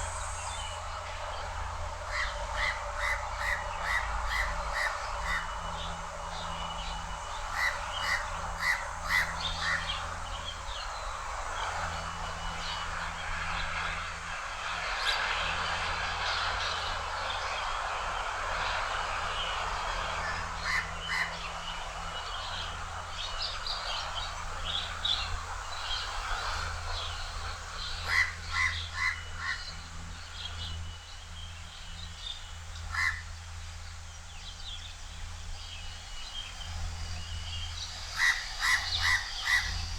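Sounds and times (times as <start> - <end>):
outdoor background hiss: 0.0 - 39.9
crow calling harshly: 7.5 - 10.0, 32.9 - 33.2, 38.1 - 39.9.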